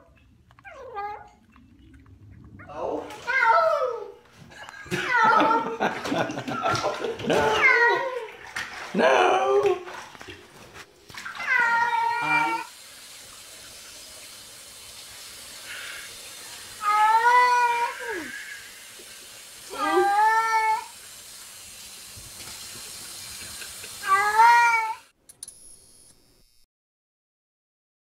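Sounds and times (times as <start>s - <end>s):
cat meowing: 11.4s - 12.7s, 16.8s - 18.3s, 24.0s - 25.0s
steady hiss: 20.6s - 24.1s.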